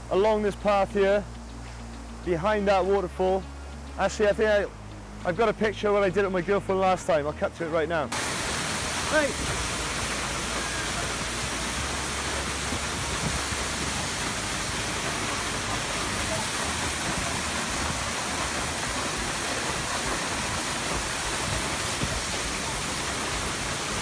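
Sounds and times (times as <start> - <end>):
waterfall rushing: 8.1 - 24.0.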